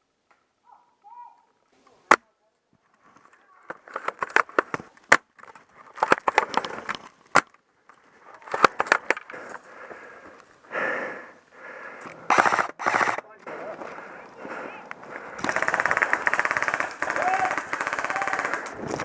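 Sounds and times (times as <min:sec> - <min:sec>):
airsoft gun shots: 0:12.3 - 0:13.2.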